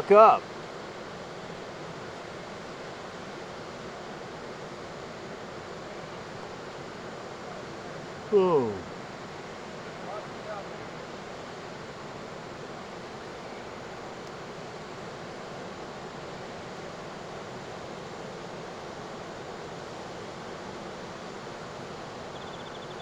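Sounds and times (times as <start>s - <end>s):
ocean surf breaking: 0.0s - 0.4s, 8.3s - 8.9s.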